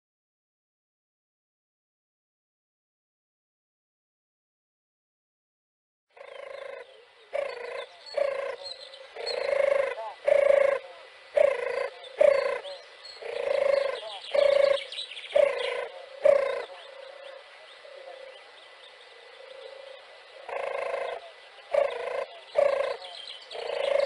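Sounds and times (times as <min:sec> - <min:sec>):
dove cooing: 0:06.2 - 0:24.0.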